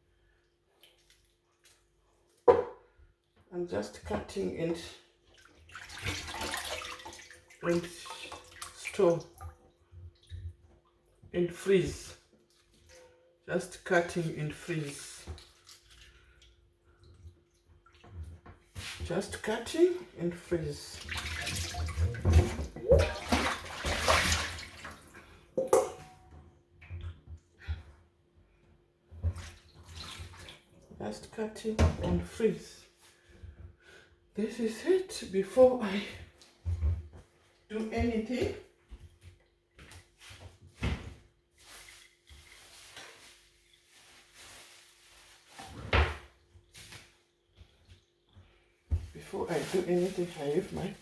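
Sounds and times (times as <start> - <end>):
knock in kitchen: 2.5 - 2.8.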